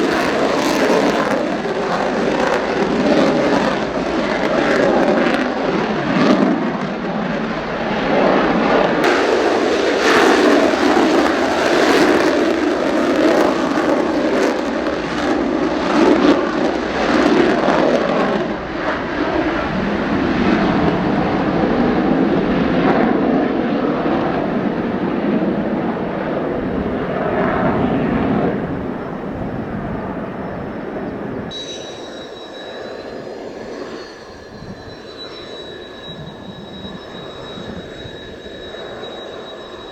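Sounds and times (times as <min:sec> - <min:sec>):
jet engine roar: 0:00.0 - 0:39.9
faint high thin whine: 0:30.4 - 0:39.9.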